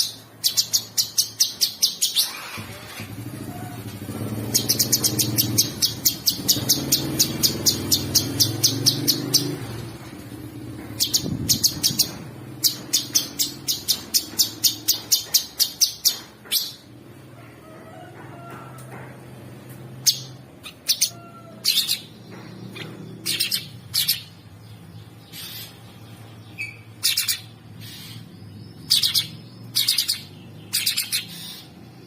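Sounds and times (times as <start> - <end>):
songbird rapid sharp chips: 10.8 - 16.9.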